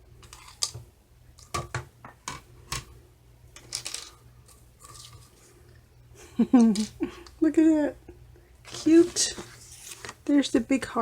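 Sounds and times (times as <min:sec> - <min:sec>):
paper rustle: 0:08.7 - 0:10.2.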